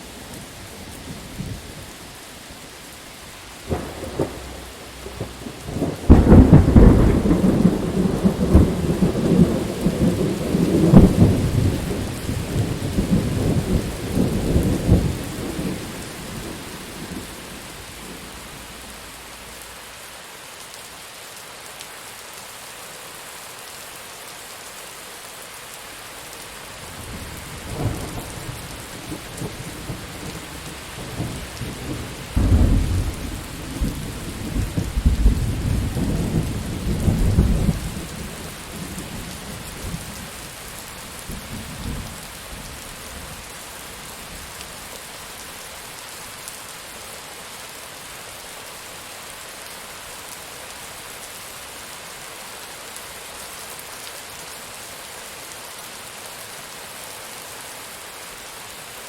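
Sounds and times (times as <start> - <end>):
heavy rain falling: 0.0 - 59.0
thunder rumbling: 3.7 - 19.5, 27.0 - 40.3.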